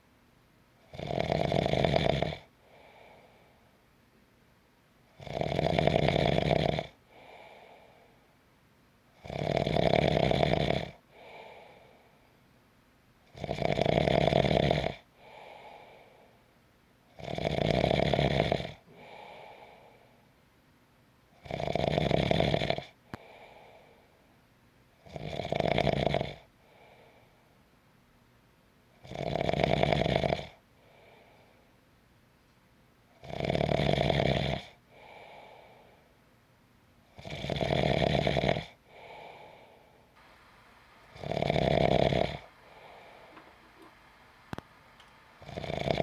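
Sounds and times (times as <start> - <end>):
person snoring: 40.2 - 46.0.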